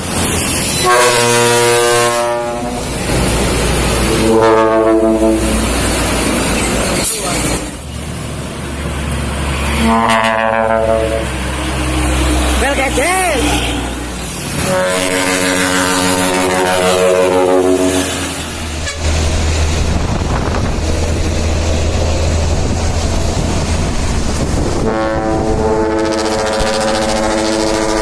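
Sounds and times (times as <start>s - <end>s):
truck engine rumble: 0.0s - 28.0s
truck air horn chord: 0.8s - 2.8s, 4.1s - 5.7s, 9.7s - 11.4s, 14.6s - 19.1s, 24.8s - 28.0s.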